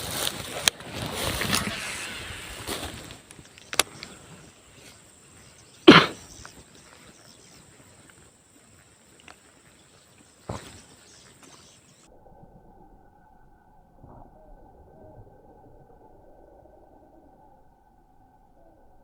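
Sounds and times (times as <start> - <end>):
rushing noise: 0.8 - 3.8
clicks: 1.4 - 4.2
person coughing: 5.8 - 6.2.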